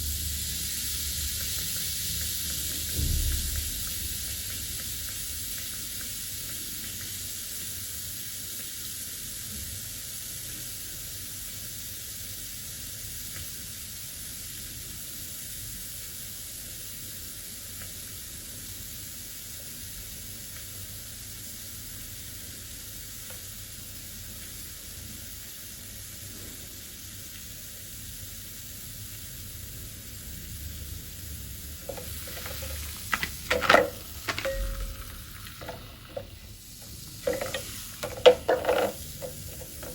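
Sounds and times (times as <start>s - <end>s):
fizzing hiss of acid: 0.0s - 39.9s
sharp clicks and knocks: 31.8s - 39.9s.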